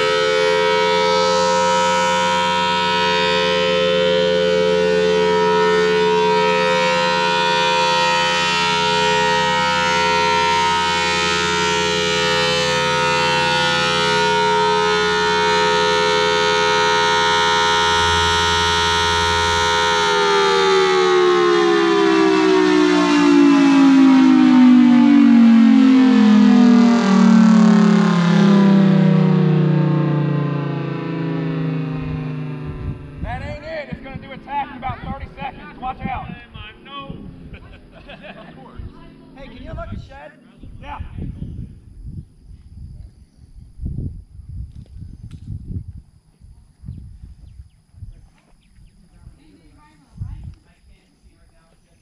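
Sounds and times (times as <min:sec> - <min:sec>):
outdoor warning siren wailing: 0:00.0 - 0:40.8.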